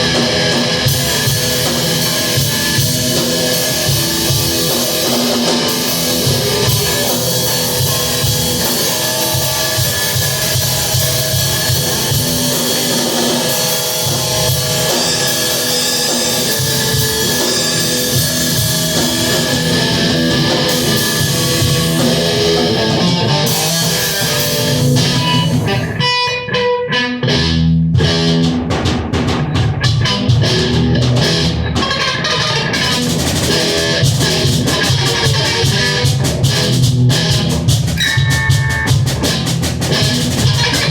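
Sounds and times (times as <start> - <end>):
cymbals: 0.0 - 25.9
drum kit: 0.0 - 40.9
rock guitar: 0.0 - 40.9.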